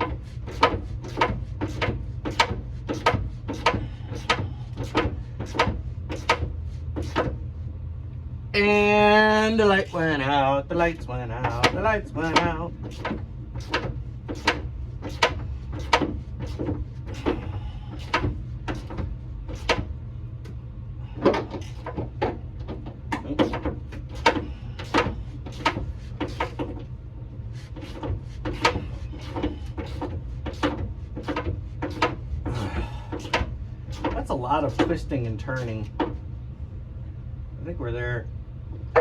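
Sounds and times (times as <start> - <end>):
low hum: 0.0 - 39.0.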